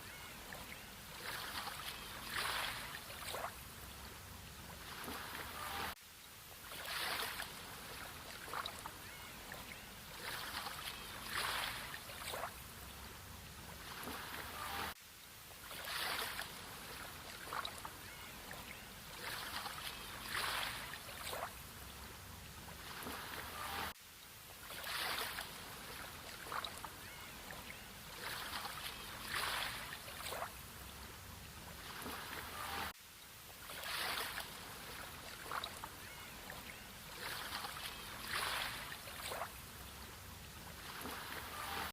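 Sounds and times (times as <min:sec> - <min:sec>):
water splashing surges: 0:00.0 - 0:41.9
sea waves breaking: 0:01.1 - 0:03.6, 0:04.7 - 0:06.0, 0:06.6 - 0:08.8, 0:10.1 - 0:12.6, 0:13.7 - 0:15.0, 0:15.6 - 0:17.8, 0:19.1 - 0:21.6, 0:22.7 - 0:23.9, 0:24.6 - 0:26.8, 0:28.1 - 0:30.6, 0:33.6 - 0:35.9, 0:36.5 - 0:39.5, 0:40.6 - 0:41.9.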